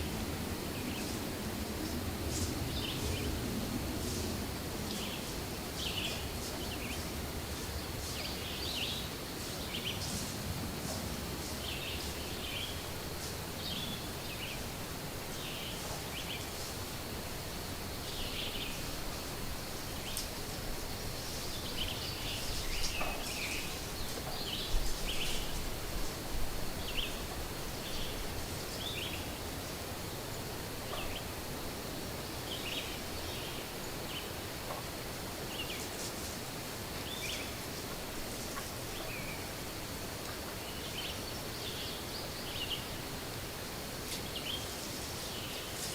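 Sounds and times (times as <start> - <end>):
songbirds chirping: 0.1 - 45.9
leaf rustling: 35.1 - 40.7, 43.3 - 45.9.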